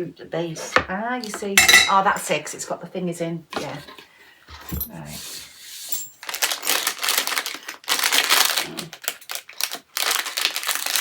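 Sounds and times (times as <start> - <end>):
packaging crinkling and rustling: 6.0 - 11.0.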